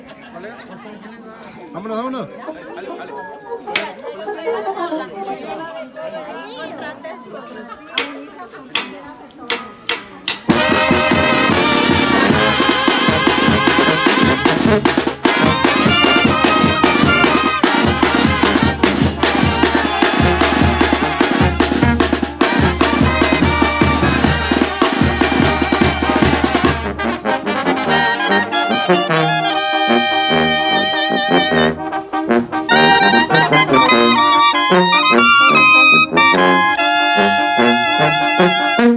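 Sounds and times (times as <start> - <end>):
drum beat: 8.8 - 27.9
brass band playing: 9.8 - 38.9
tuba bass line: 10.5 - 38.9.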